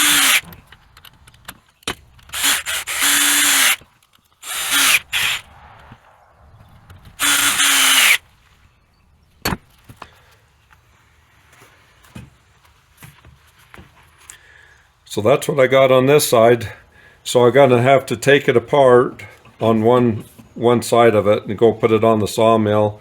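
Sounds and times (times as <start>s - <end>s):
power drill running: 0.0s - 0.5s, 2.3s - 3.8s, 4.4s - 5.4s, 7.2s - 8.2s.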